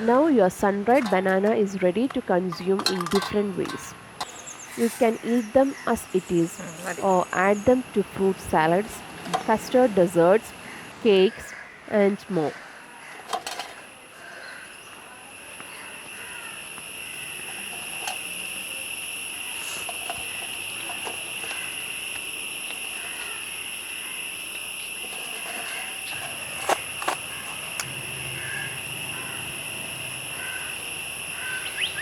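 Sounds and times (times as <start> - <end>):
crickets shrilling: 0.0 - 32.0.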